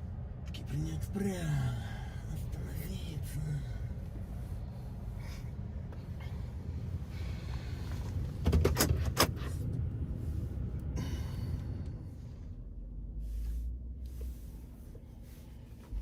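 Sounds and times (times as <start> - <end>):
car rumbling: 0.0 - 16.0
sharp clicks and knocks: 8.4 - 9.5.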